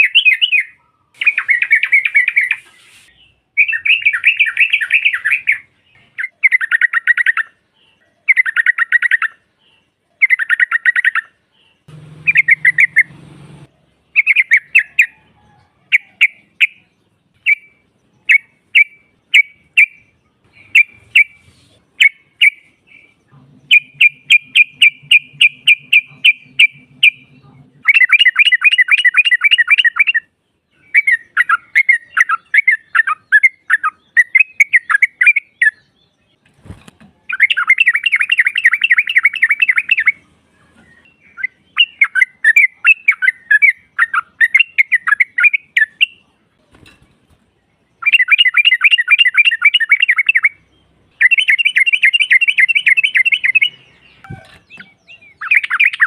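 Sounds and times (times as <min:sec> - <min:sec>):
bulbul chattering calls: 0:00.0 - 0:15.2, 0:15.9 - 0:35.9, 0:51.2 - 0:56.0.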